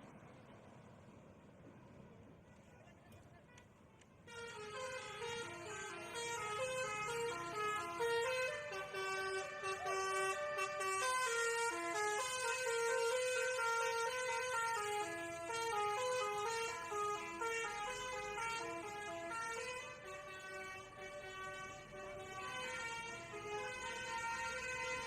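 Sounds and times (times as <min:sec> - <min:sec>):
multi-tone bus horn tune: 0:02.5 - 0:25.0.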